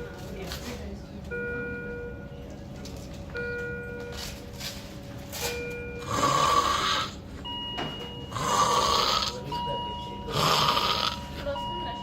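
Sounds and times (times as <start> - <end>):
person snoring heavily: 6.0 - 7.2, 8.3 - 9.4, 10.3 - 11.2.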